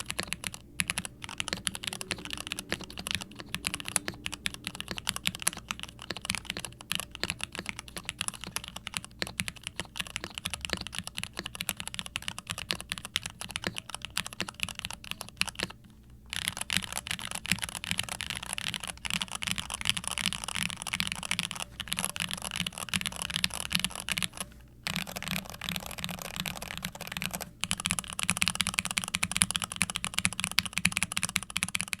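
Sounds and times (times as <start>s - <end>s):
mechanical keyboard typing: 0.0s - 32.0s.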